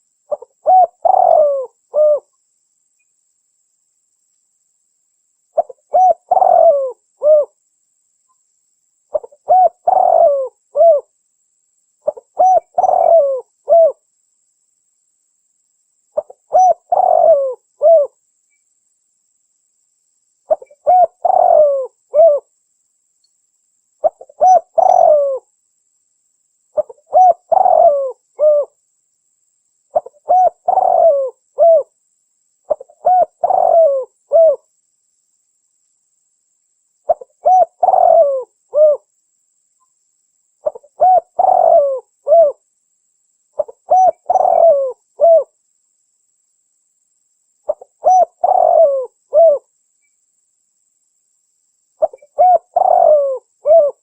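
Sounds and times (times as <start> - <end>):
dove cooing: 0.0 - 2.3, 5.6 - 7.6, 9.1 - 11.1, 12.0 - 14.0, 16.2 - 18.2, 20.5 - 22.5, 24.0 - 25.5, 26.8 - 28.8, 29.9 - 31.9, 32.7 - 34.6, 37.1 - 39.1, 40.6 - 42.6, 43.6 - 45.5, 47.7 - 49.7, 52.0 - 54.0.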